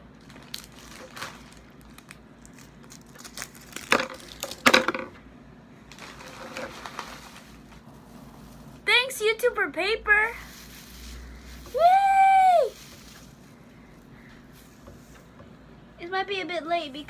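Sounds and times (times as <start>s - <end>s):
packing paper crumpling: 0.2s - 4.7s, 5.9s - 8.8s, 10.4s - 13.6s.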